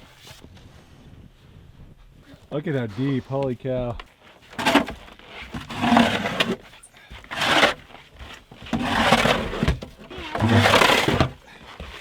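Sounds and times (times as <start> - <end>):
snow crunching: 4.6 - 6.6, 7.2 - 12.0.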